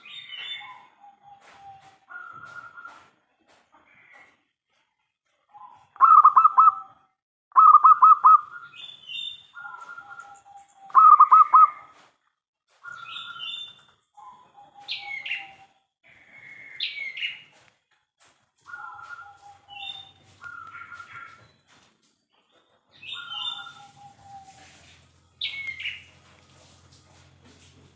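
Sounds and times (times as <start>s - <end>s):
birds chirping: 0.0s - 4.6s, 5.4s - 12.0s, 12.7s - 27.4s
dove cooing: 5.5s - 6.9s, 9.6s - 11.9s, 18.7s - 21.4s, 23.1s - 26.2s.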